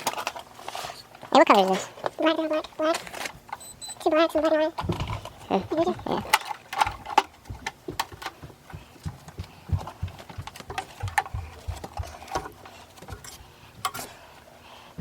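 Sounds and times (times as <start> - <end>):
hand tools knocking and clicking: 4.4 - 14.1.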